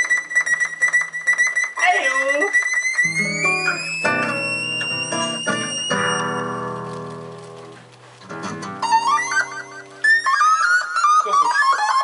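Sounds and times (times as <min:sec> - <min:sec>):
high tone gliding upward: 0:03.0 - 0:06.3
amplified instrument chords: 0:03.0 - 0:10.3.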